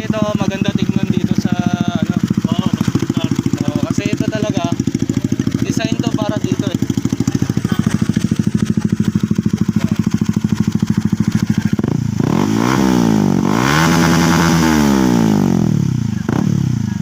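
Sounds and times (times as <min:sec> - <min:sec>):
motorcycle engine idling and revving: 0:00.0 - 0:17.0.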